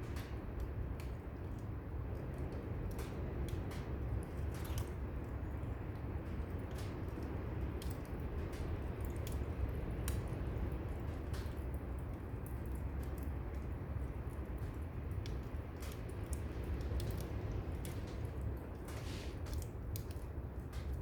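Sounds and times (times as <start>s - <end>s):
firewood crackling and popping: 0.0s - 21.0s.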